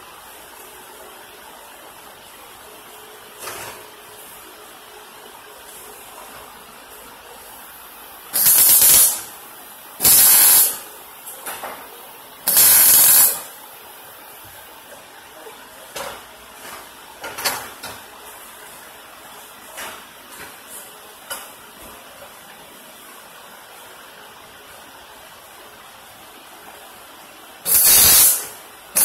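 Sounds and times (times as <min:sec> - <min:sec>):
welder arc sizzling: 0:08.3 - 0:09.3, 0:10.0 - 0:10.9, 0:12.5 - 0:13.5, 0:27.6 - 0:29.0.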